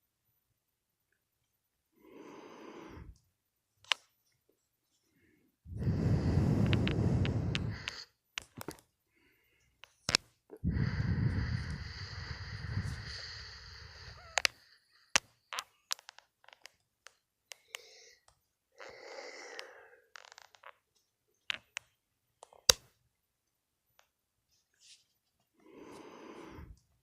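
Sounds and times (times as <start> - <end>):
person breathing heavily: 2.0 - 3.2, 5.1 - 8.2, 10.6 - 15.2, 17.6 - 20.2, 25.6 - 26.8.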